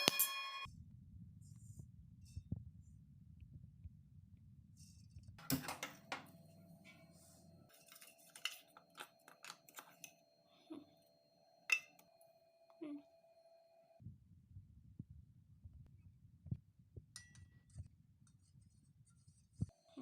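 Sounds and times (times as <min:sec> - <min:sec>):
faint steady tone: 0:06.2 - 0:14.2
utensils clicking and clinking: 0:07.7 - 0:10.2.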